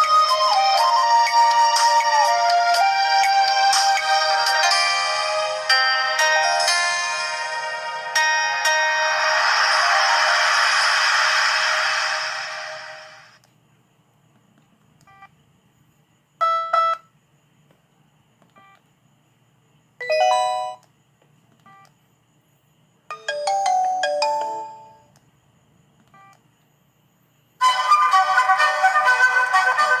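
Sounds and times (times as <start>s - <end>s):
phone ringtone chimes: 3.8s - 10.5s, 23.1s - 25.1s
busy phone ringtone: 20.0s - 20.8s, 23.1s - 25.1s.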